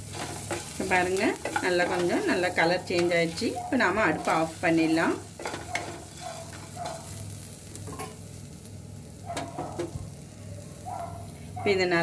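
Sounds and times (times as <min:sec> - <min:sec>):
spatula scraping a pan: 0:00.0 - 0:07.3
food sizzling in oil: 0:00.0 - 0:12.0.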